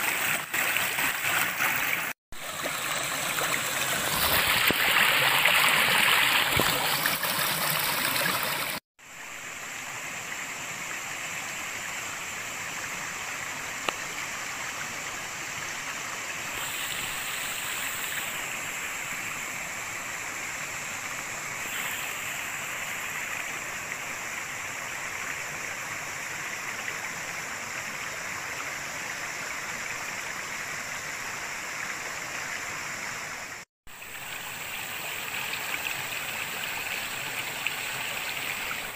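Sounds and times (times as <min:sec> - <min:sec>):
water rushing over rocks: 0:00.0 - 0:19.9.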